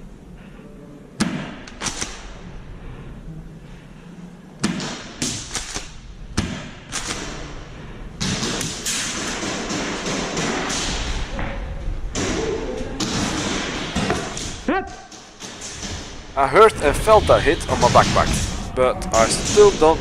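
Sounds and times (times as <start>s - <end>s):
airsoft shots cracking: 1.2s - 2.4s, 4.6s - 7.6s.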